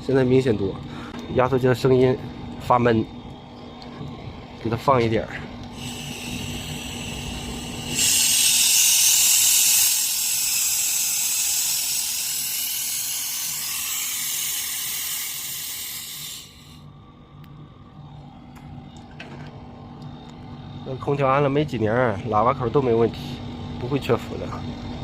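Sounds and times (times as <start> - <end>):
refrigerant gas hissing: 0.7 - 17.1.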